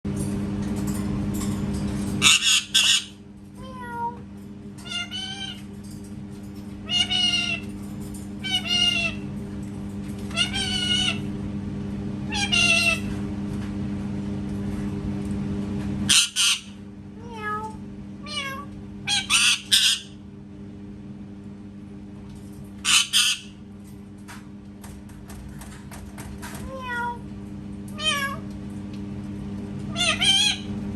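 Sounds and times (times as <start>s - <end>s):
parrot meowing like a cat: 2.2s - 4.2s, 4.8s - 5.7s, 6.8s - 7.7s, 8.4s - 9.2s, 10.3s - 11.2s, 12.3s - 13.1s, 16.4s - 20.1s, 26.6s - 27.2s, 27.9s - 28.5s, 29.9s - 30.7s.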